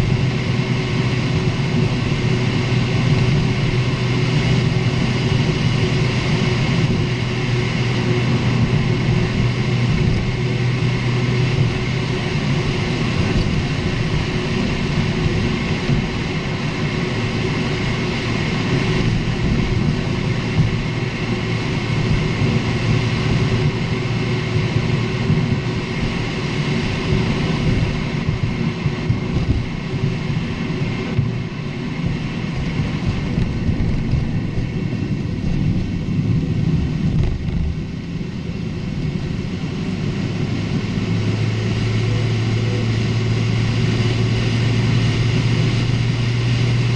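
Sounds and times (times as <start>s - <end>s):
road and engine noise: 0.0s - 46.9s
suspension rattling and creaking: 1.0s - 38.2s.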